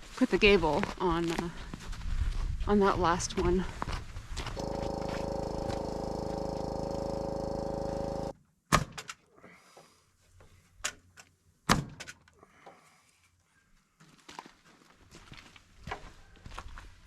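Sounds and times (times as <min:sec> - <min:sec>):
machine hum: 0:04.4 - 0:08.3.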